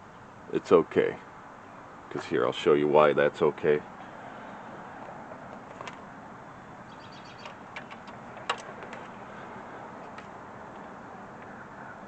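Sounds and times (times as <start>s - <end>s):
low background noise: 0.0s - 12.0s
handling clicks and taps: 7.4s - 9.2s.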